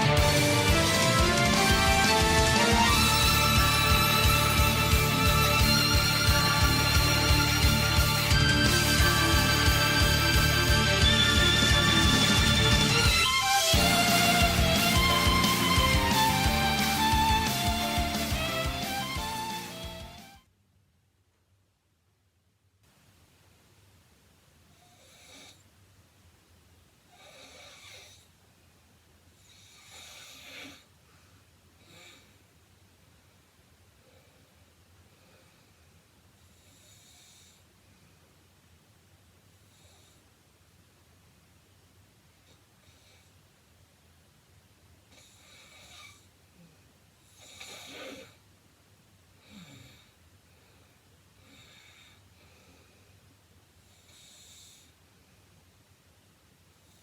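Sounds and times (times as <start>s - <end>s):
woman snoring: 0.0s - 20.2s, 24.8s - 25.6s, 27.1s - 28.3s, 29.4s - 30.9s, 47.3s - 48.4s, 49.4s - 50.2s.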